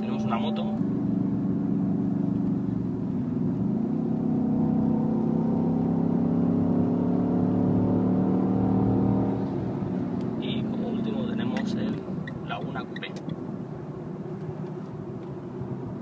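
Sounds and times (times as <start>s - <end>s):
synthesized motorcycle engine sound: 0.0s - 9.8s.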